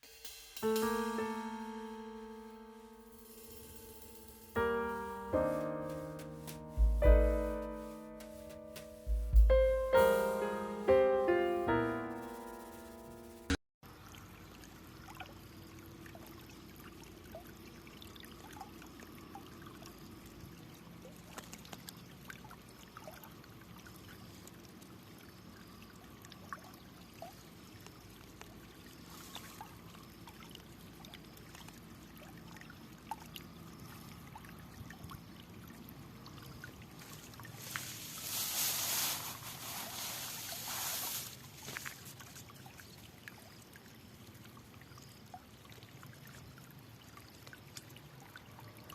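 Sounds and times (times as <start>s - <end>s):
water drips and splashes: 13.8s - 48.9s
water trickling: 13.8s - 48.9s
rush of water: 35.7s - 43.6s.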